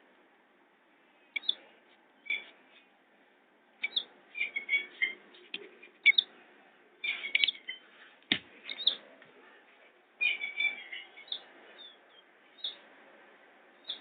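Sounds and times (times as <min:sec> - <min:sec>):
bird chick peeping: 0:01.3 - 0:01.6, 0:02.2 - 0:02.6, 0:03.8 - 0:06.3, 0:07.0 - 0:07.9, 0:08.7 - 0:09.0, 0:10.2 - 0:12.9, 0:13.8 - 0:14.0.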